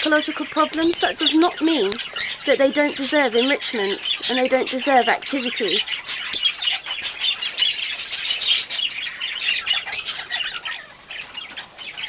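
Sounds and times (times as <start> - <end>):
parrots chirping and chattering: 0.0 - 12.0.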